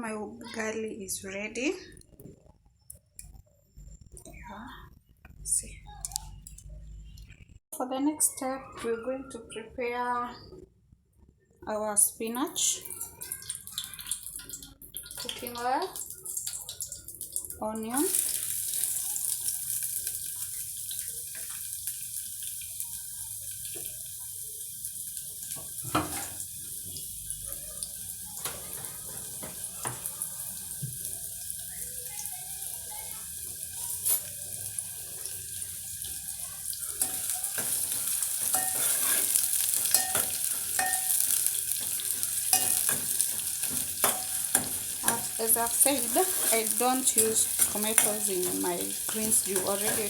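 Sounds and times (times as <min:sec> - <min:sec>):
onions sizzling in a pan: 0:12.2 - 0:50.0
stirring and scraping: 0:36.0 - 0:50.0.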